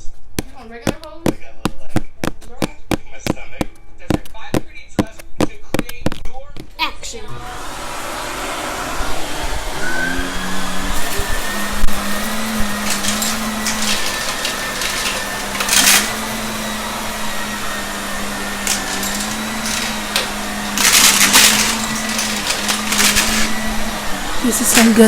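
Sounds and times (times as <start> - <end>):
vacuum cleaner humming: 7.0 - 25.0
crackling of debris picked up: 12.0 - 17.5, 18.3 - 25.0.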